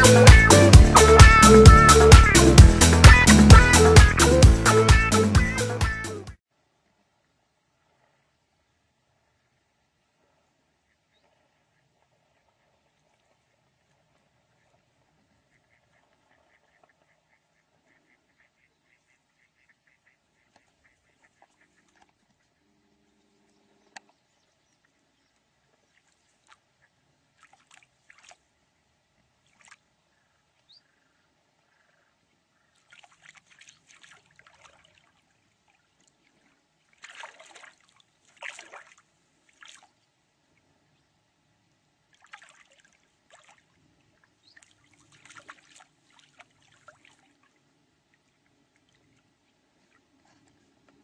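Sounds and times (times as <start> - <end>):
water sloshing and splashing: 25.4 - 28.6, 29.3 - 30.0, 32.7 - 40.0, 42.1 - 51.0.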